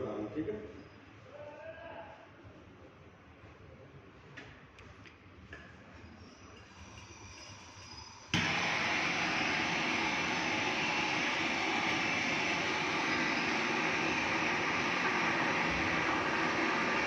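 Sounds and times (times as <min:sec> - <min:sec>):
torch flame hissing: 0:08.4 - 0:17.0.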